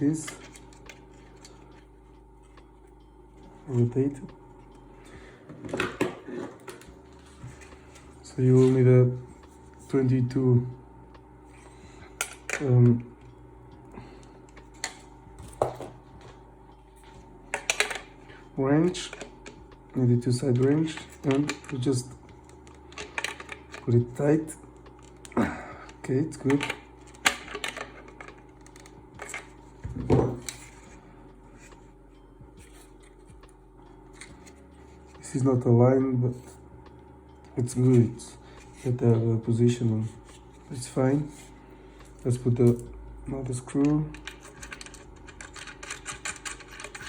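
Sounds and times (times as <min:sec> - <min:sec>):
metal tools clicking and tapping: 0:17.5 - 0:18.1, 0:20.4 - 0:24.0, 0:26.0 - 0:30.7, 0:42.0 - 0:47.0.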